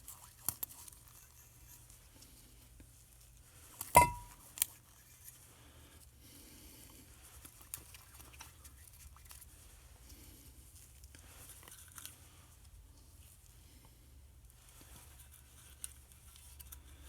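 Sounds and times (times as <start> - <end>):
metal clink with ringing: 4.0 - 4.3.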